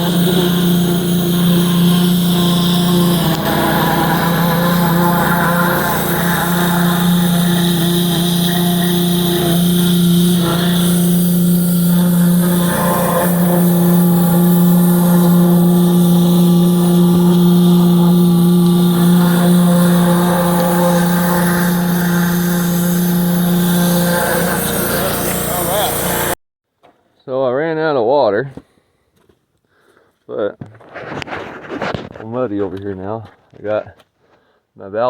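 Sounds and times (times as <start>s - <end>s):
pressure washer motor hum: 0.0s - 26.4s.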